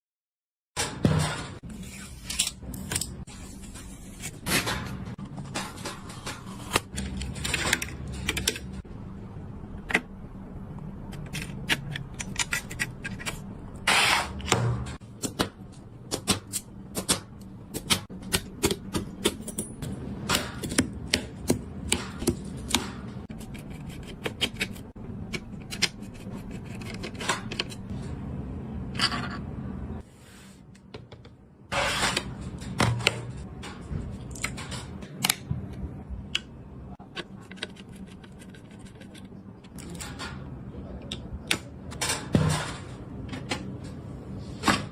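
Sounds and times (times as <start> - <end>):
computer parts clicking and scraping: 0.8 - 8.9, 11.1 - 15.0, 17.8 - 28.0, 31.7 - 35.5, 37.0 - 43.8
steady low hum: 1.3 - 44.9.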